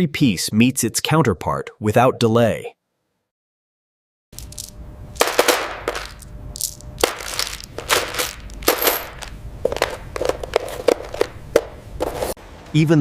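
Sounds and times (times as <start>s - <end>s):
metal case parts clanking: 4.4s - 11.7s.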